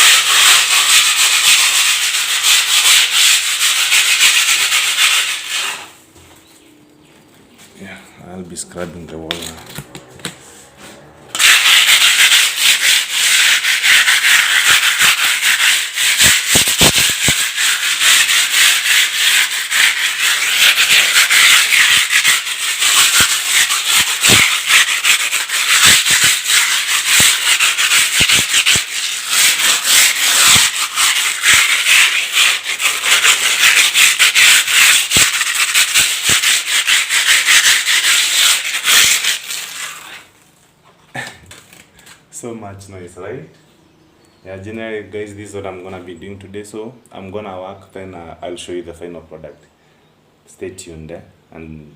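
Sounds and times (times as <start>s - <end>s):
sandpaper scraping a wall: 0.0s - 6.0s, 9.1s - 40.4s.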